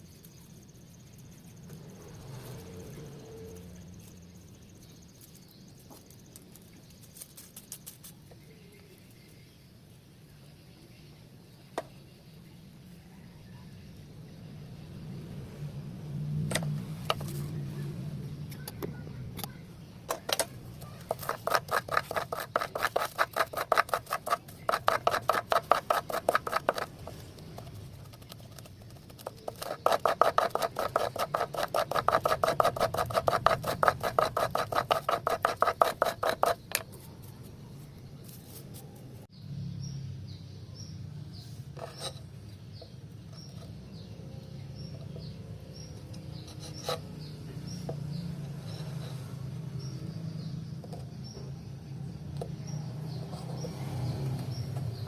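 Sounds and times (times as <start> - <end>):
hand tool sawing wood: 21.0 - 27.1, 29.1 - 36.6.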